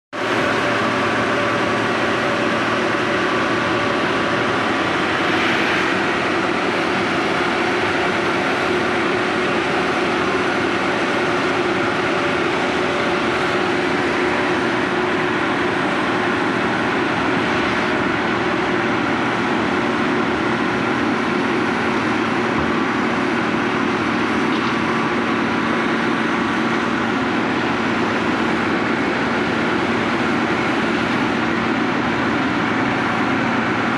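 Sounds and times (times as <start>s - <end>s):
milling machine mechanical din: 0.2s - 33.9s.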